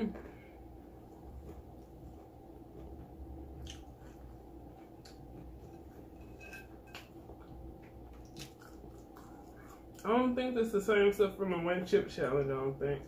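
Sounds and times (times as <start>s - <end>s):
low room hum: 0.0s - 13.0s
chewing clicks and crackles: 3.6s - 5.8s, 6.9s - 10.1s.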